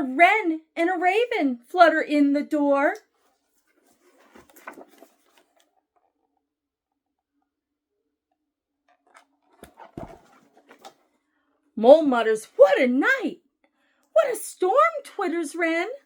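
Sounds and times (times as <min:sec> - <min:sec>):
paper pages rustling: 0:03.2 - 0:06.1, 0:08.9 - 0:11.0.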